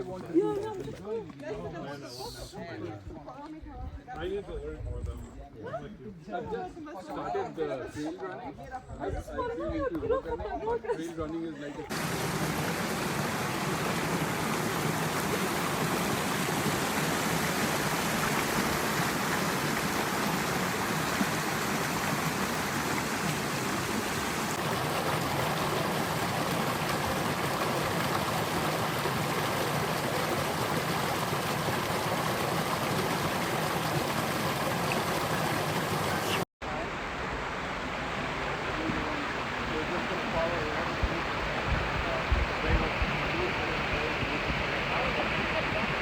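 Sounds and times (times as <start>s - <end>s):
flowing stream rushing: 11.9s - 46.0s.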